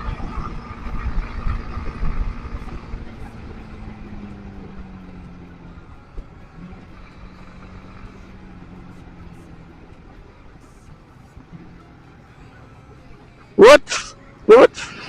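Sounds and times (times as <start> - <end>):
wind rumble on microphone: 0.0 - 5.1
motorcycle engine running: 0.0 - 15.0.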